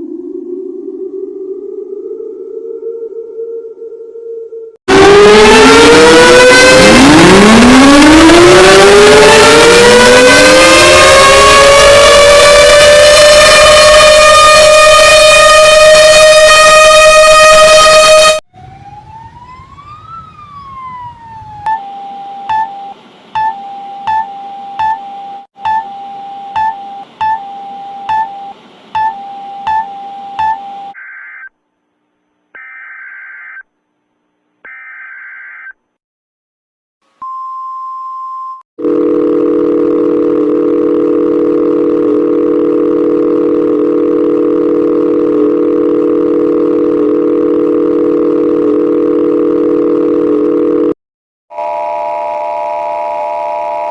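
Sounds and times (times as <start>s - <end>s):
loud buzzing tone: 4.9s - 18.4s, 38.8s - 53.9s
electronic emergency alert tones: 4.9s - 31.5s
loud steady two-note tone: 8.5s - 18.4s
short beeps: 21.7s - 31.0s, 37.2s - 38.6s.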